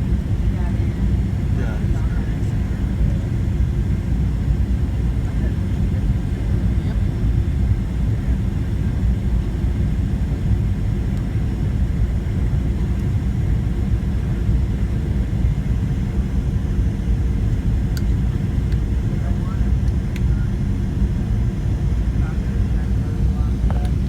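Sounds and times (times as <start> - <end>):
airliner low rumble: 0.0 - 24.0
faint steady hum: 13.7 - 24.0.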